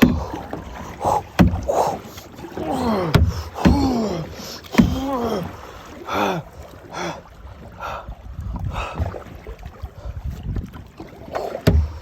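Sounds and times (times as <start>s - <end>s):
paddle strokes in water: 0.0s - 12.0s
wind on microphone: 7.5s - 10.9s.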